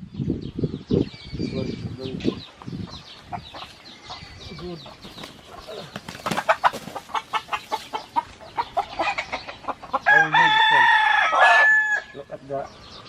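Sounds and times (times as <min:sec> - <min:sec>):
chickens clucking: 0:02.0 - 0:11.8
rooster crowing: 0:10.1 - 0:12.2.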